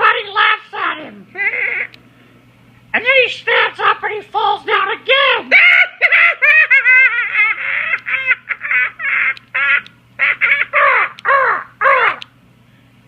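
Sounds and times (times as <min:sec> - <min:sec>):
harsh cackling laughter: 0:05.5 - 0:12.2.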